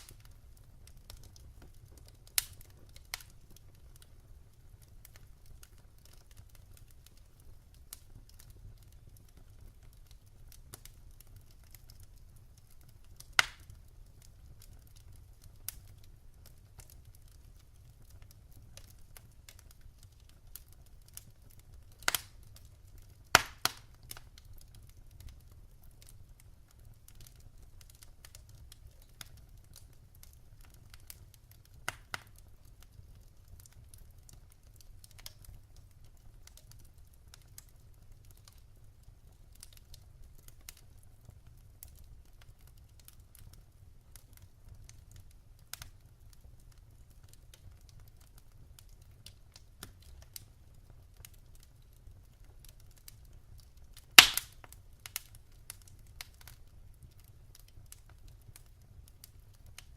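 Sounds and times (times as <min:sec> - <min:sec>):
wood fire crackling: 0:00.0 - 0:59.9
loud sharp fire pops: 0:23.3 - 0:23.9, 0:54.2 - 0:54.7.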